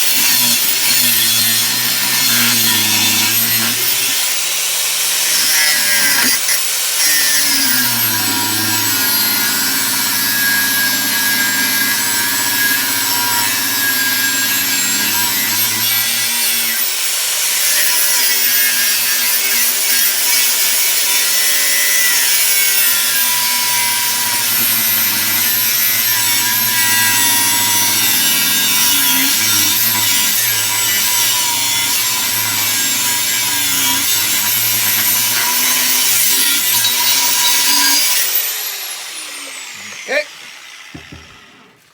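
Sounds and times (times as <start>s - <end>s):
electric grinder grinding steel: 0.0s - 41.9s.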